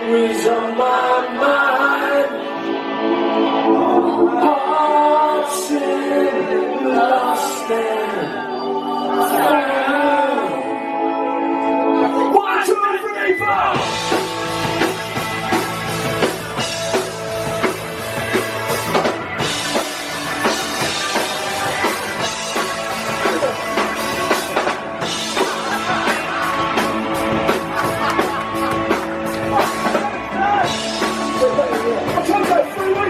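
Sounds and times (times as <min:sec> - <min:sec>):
rock guitar: 0:13.3 - 0:33.0
drum kit steady beat: 0:13.8 - 0:33.0.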